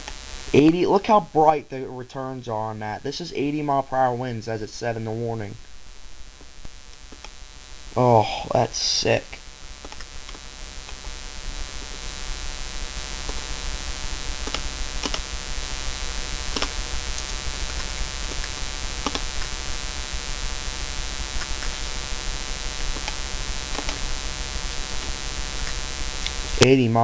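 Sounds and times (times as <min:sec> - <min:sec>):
electrical buzz and hum: 0:00.0 - 0:27.0
sharp clicks: 0:06.4 - 0:07.4, 0:09.8 - 0:11.2, 0:14.4 - 0:15.3, 0:16.5 - 0:19.5, 0:22.9 - 0:24.1.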